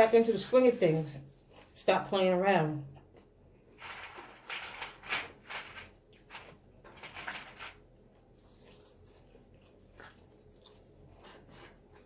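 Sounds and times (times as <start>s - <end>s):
close-up chewing: 8.0s - 12.0s.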